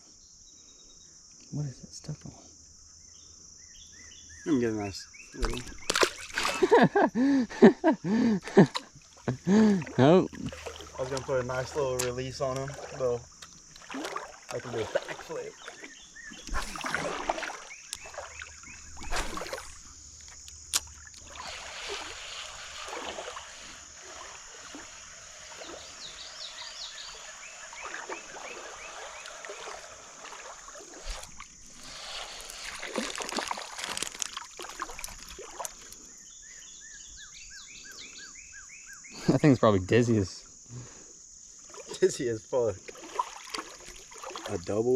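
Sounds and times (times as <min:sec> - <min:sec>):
high-pitched insect drone: 0:00.0 - 0:44.9
chirps: 0:02.9 - 0:08.4, 0:14.7 - 0:19.9, 0:21.2 - 0:32.6, 0:35.6 - 0:39.6
splashes at water's edge: 0:05.4 - 0:06.9, 0:08.4 - 0:35.9, 0:41.6 - 0:44.9.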